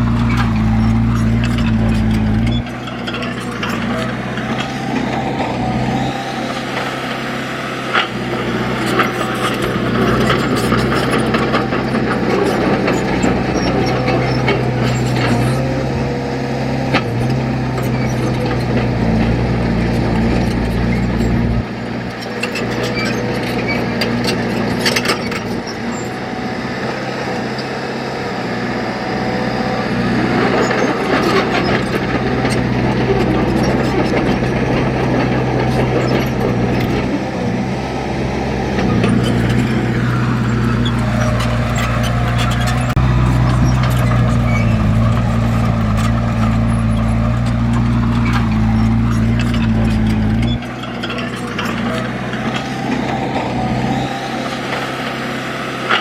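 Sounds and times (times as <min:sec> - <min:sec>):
heavy machinery diesel engine: 0:00.0 - 0:56.0
clanks and knocks: 0:38.7 - 0:54.0.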